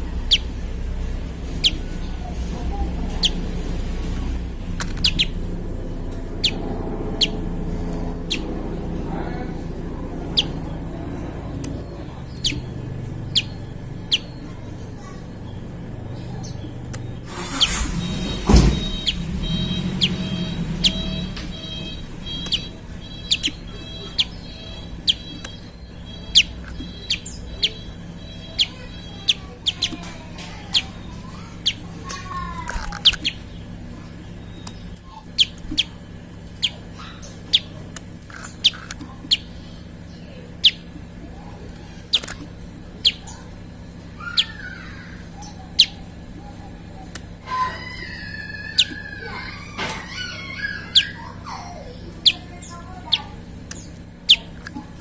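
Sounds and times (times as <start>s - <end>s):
bird chirping: 0.0s - 55.0s
steady low hum: 0.0s - 55.0s
thump: 18.4s - 18.9s.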